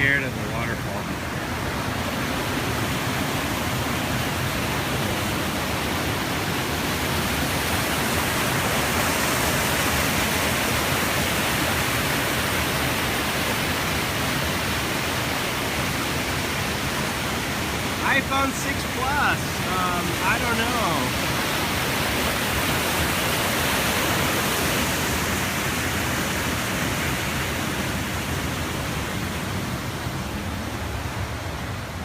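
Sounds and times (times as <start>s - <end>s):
waterfall rushing: 0.0s - 32.0s.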